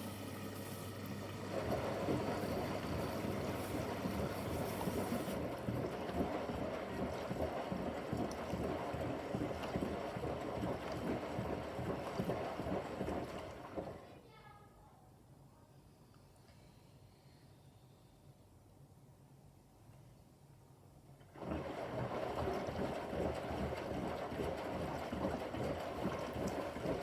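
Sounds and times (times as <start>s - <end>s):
washing machine water sloshing: 0.0s - 14.0s, 21.2s - 27.0s.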